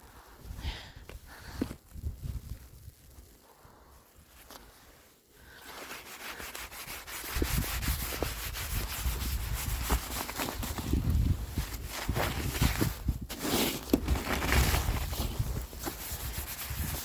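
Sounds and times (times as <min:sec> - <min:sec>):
gloved hand brushing snow: 0:04.2 - 0:17.0.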